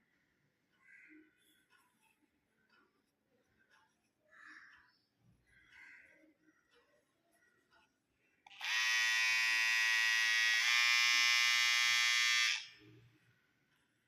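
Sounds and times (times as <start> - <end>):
electric hair trimmer buzzing: 8.5 - 12.8.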